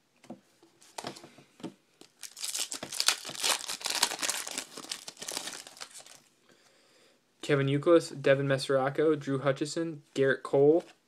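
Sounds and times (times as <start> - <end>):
foil wrapper crinkling: 2.0 - 6.2.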